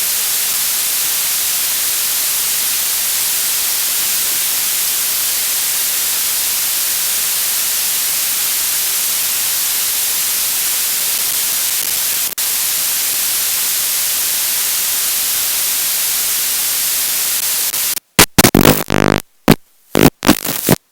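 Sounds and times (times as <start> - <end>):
loud static hiss: 0.0 - 20.9
choppy stuttering pitched bursts: 17.8 - 20.8.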